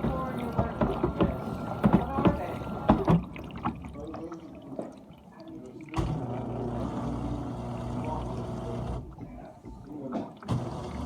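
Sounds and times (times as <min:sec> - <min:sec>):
dishwasher motor hum: 0:00.0 - 0:04.2, 0:05.8 - 0:11.0
water sloshing and gurgling: 0:00.0 - 0:11.0.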